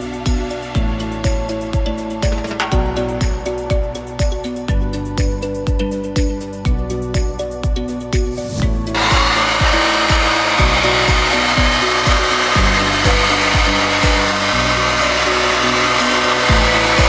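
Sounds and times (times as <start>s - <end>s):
background music with low kicks: 0.0s - 17.0s
loud noisy whir: 8.9s - 17.0s.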